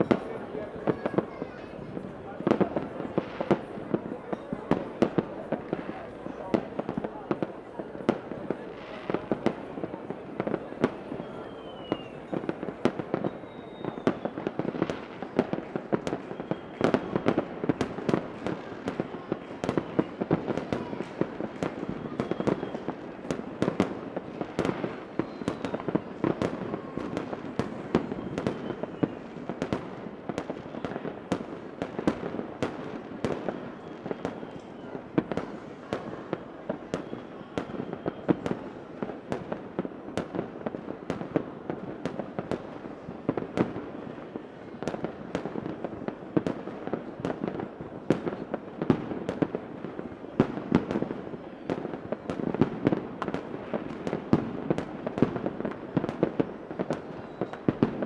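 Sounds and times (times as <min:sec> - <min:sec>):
fireworks popping and crackling: 0:00.0 - 0:58.0
faint firework whistles: 0:10.6 - 0:39.4, 0:56.4 - 0:58.0.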